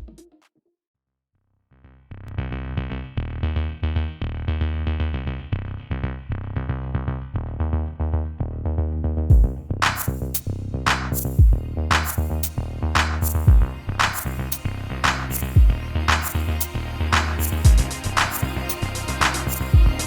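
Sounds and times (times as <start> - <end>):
deep bass: 1.7 - 20.0
drum machine hits: 9.3 - 10.1, 17.6 - 18.0.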